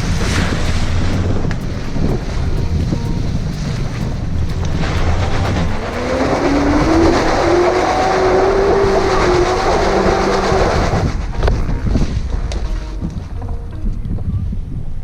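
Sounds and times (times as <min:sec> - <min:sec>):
car engine revving high: 0:00.0 - 0:11.7.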